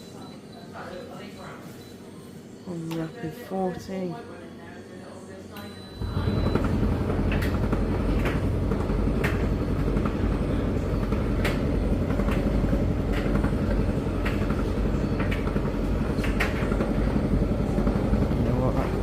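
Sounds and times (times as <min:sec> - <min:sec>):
tumble dryer drum rumbling: 0:05.9 - 0:19.0.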